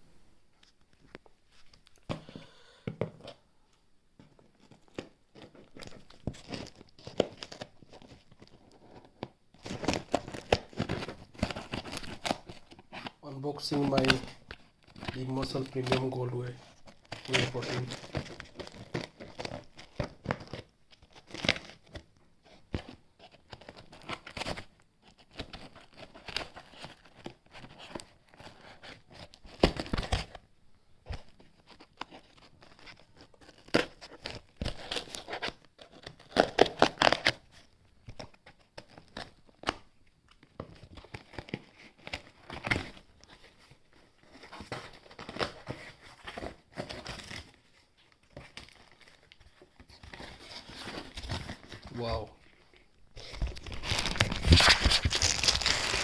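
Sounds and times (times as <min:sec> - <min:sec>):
plastic wrap crinkling: 0:04.4 - 0:30.4, 0:31.0 - 0:56.0
tape and packaging tearing: 0:53.2 - 0:56.0.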